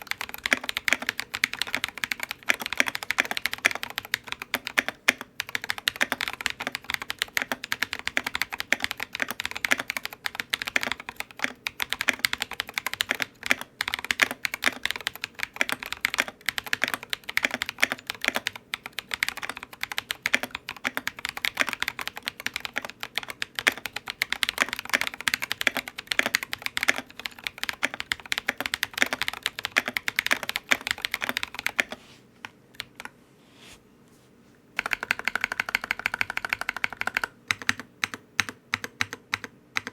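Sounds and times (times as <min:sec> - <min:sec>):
fast mechanical keyboard typing: 0:00.0 - 0:32.0, 0:34.8 - 0:39.9.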